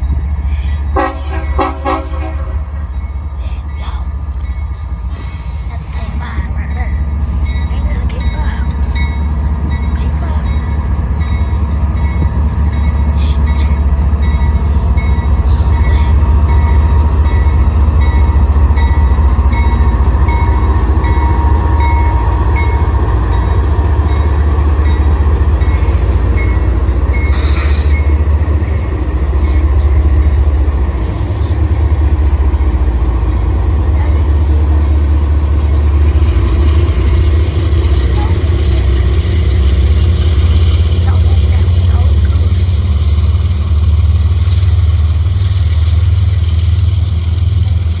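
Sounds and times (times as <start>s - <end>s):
train rumbling past: 0.0s - 48.0s
high-pitched metallic screech: 25.8s - 28.1s.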